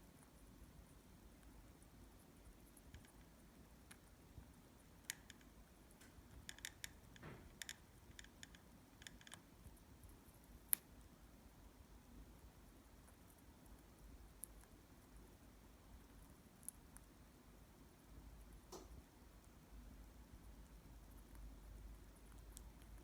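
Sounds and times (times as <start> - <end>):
bird beak clicking while eating: 4.8 - 10.8, 20.4 - 23.0.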